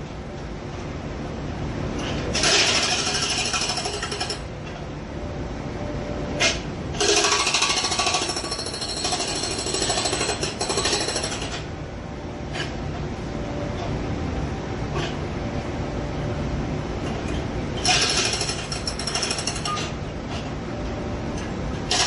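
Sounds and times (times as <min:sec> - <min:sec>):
city background rumble: 0:11.4 - 0:22.0.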